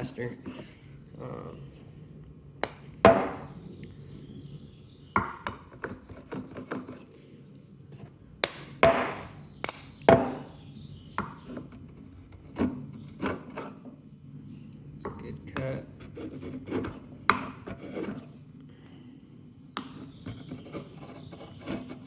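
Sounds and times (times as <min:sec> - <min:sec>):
sharp wooden knocks: 0:02.6 - 0:03.5, 0:05.2 - 0:06.9, 0:08.4 - 0:10.6.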